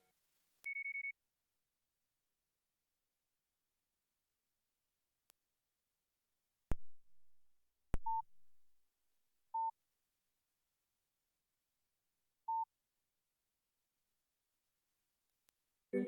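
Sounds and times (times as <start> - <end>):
mobile phone beeps: 0.7 - 1.1, 8.0 - 8.3
low thuds: 6.7 - 7.4.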